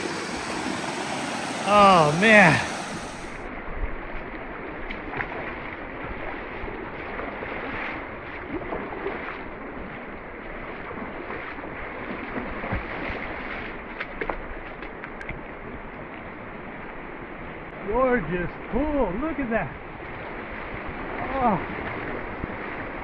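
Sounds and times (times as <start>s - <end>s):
creek water rushing over rocks: 0.0s - 3.4s.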